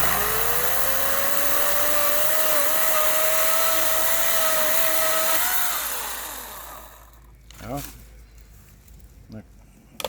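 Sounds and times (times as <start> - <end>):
chainsaw cutting log: 0.0 - 7.3.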